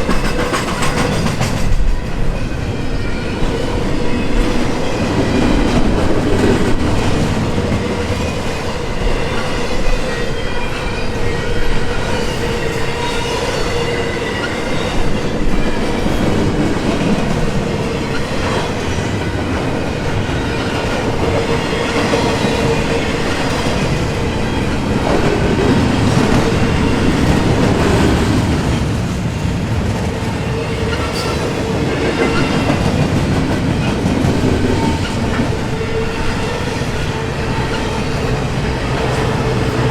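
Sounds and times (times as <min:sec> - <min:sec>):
train wheels clacking over rail joints: 0:00.0 - 0:02.0.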